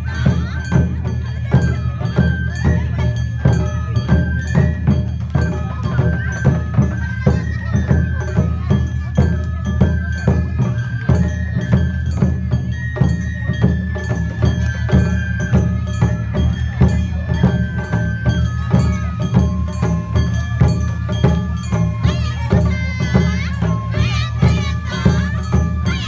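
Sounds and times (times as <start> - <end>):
drums and percussion beat: 0.0 - 26.0
high held melody line: 18.7 - 26.0.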